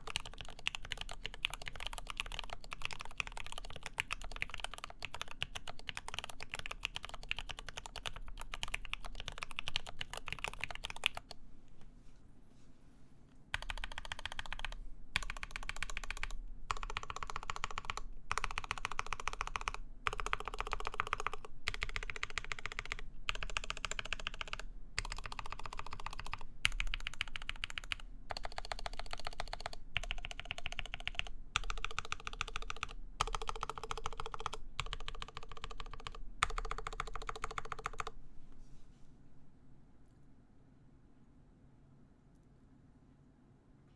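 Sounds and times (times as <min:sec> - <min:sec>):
mechanical keyboard typing: 0:00.0 - 0:11.4, 0:13.5 - 0:38.2.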